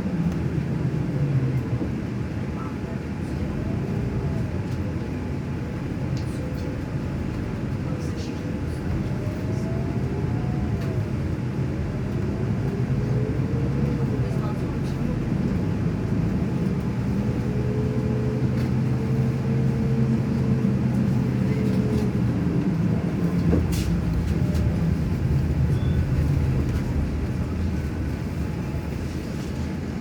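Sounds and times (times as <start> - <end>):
vehicle engine rumble: 0.0 - 30.0
faint whine: 21.5 - 30.0.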